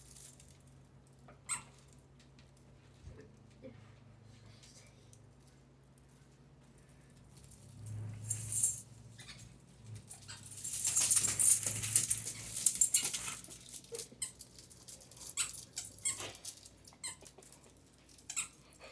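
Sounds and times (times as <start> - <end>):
squeaky dog toys squeaking: 1.5 - 1.8, 15.2 - 17.4, 18.2 - 18.8.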